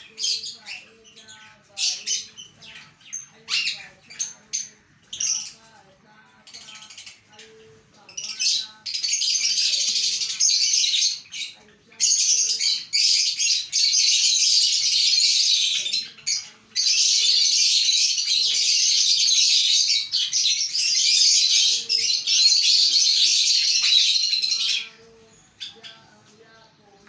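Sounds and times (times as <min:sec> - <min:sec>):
many small birds chirping: 0:00.0 - 0:27.0.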